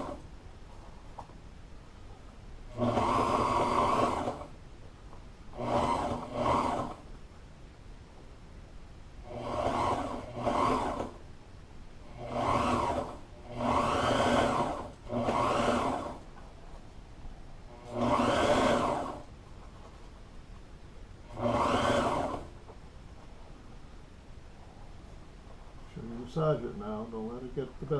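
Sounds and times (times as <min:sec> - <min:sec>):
small electric motor running: 0:02.7 - 0:04.5, 0:05.5 - 0:07.0, 0:09.2 - 0:11.2, 0:12.1 - 0:16.2, 0:17.7 - 0:19.3, 0:21.3 - 0:22.5.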